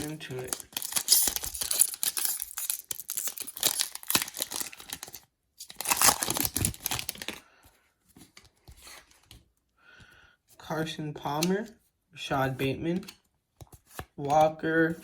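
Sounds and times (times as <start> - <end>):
plastic wrapper tearing and crinkling: 0.0 - 7.4.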